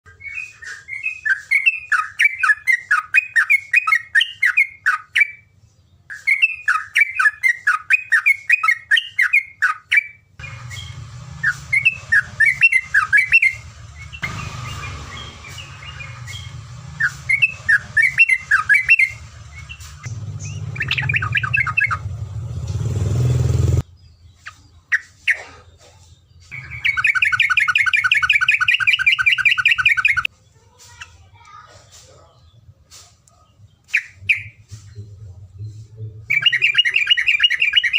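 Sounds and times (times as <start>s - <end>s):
bird trill: 0.1s - 5.5s, 6.1s - 22.5s, 23.9s - 25.6s, 26.4s - 30.3s, 33.8s - 34.8s, 36.2s - 37.9s
bird singing chattering notes: 0.1s - 25.4s, 26.2s - 30.3s, 33.3s - 37.9s.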